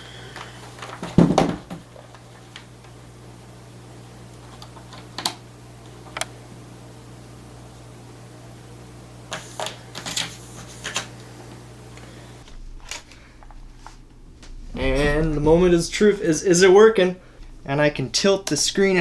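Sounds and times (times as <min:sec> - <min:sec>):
steady low hum: 0:11.2 - 0:19.0.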